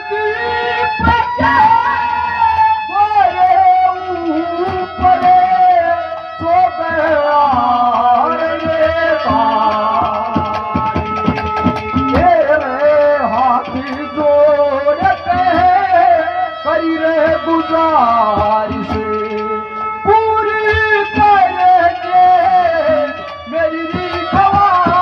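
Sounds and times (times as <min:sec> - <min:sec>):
ornamented folk melody: 0:00.0 - 0:25.0
hand drum beat: 0:04.6 - 0:05.8, 0:07.0 - 0:14.3, 0:17.2 - 0:25.0.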